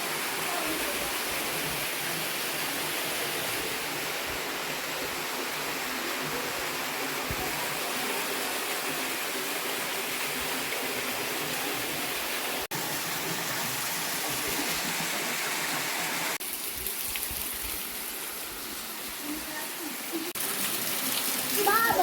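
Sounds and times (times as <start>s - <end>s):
waterfall rushing: 0.0s - 16.4s.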